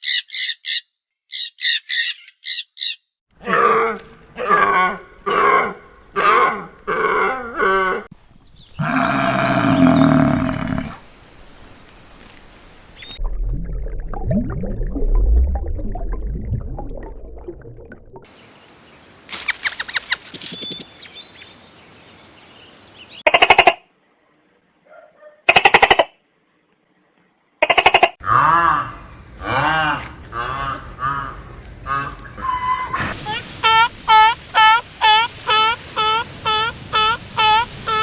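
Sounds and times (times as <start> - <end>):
long low animal call: 3.4 - 8.1, 8.8 - 11.1
long pitched animal call: 8.8 - 11.0
quick series of clicks: 19.4 - 20.9.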